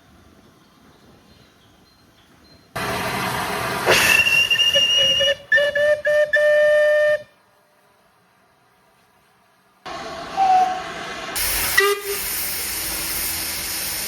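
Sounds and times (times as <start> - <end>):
loud rushing noise: 2.8 - 4.9, 9.9 - 14.0
steam locomotive whistle: 3.8 - 7.4, 10.0 - 14.0.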